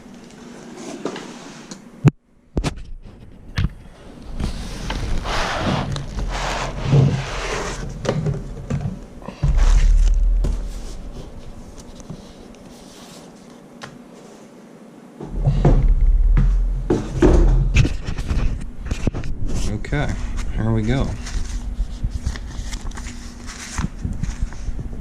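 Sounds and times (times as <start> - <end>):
heavy low thudding and rumbling: 9.4 - 12.0, 15.3 - 18.8.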